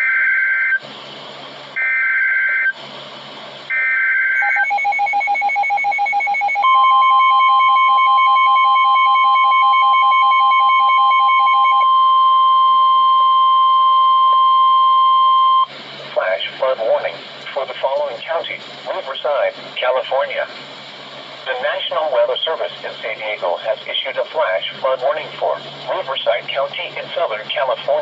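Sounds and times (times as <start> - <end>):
rapid electronic beeping: 3.7 - 11.8
steady warning tone: 3.7 - 15.8
hissy radio static: 16.1 - 28.0.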